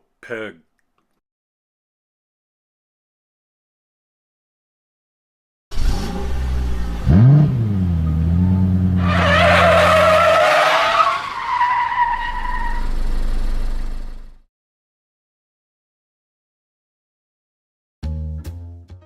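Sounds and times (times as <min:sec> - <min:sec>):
race car engine revving: 0:05.7 - 0:11.2
tyres squealing: 0:08.4 - 0:12.9.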